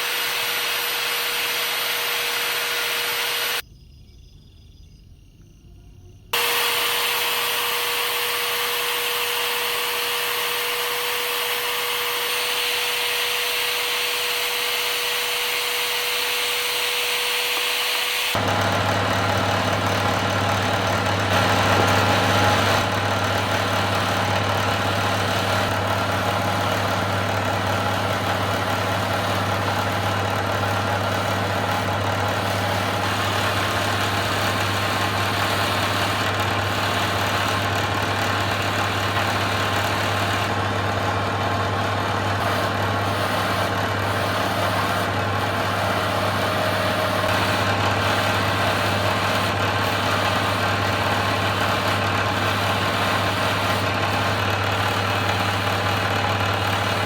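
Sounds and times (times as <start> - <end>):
power tool motor whining: 0.0 - 3.6, 6.4 - 57.0
machine deep hum: 18.3 - 57.0.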